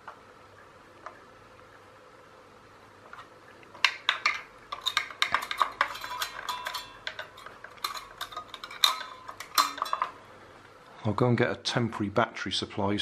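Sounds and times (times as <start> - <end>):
small metal parts clinking: 3.8 - 10.2.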